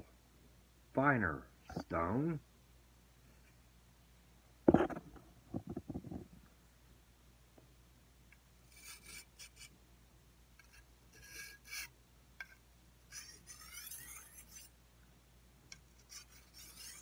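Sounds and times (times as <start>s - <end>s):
blade scraping on sharpening stone: 8.7s - 9.7s, 10.6s - 14.7s, 16.0s - 17.0s.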